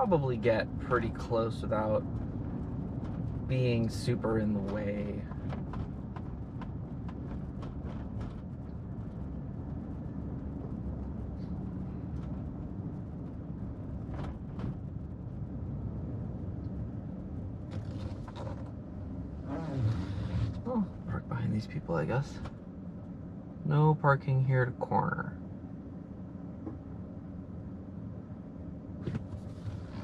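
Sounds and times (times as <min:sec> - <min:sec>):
car engine and tyres rumbling: 0:00.0 - 0:30.0
faint clicks and rattles: 0:02.0 - 0:09.9.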